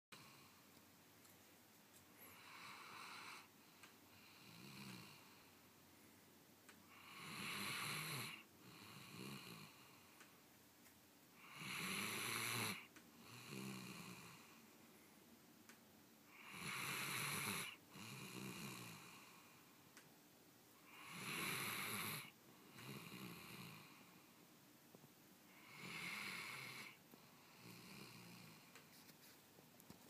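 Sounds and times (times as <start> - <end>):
dog snoring: 2.2 - 3.5, 4.1 - 5.5, 6.9 - 10.0, 11.4 - 14.6, 16.3 - 19.4, 20.8 - 24.2, 25.5 - 28.7.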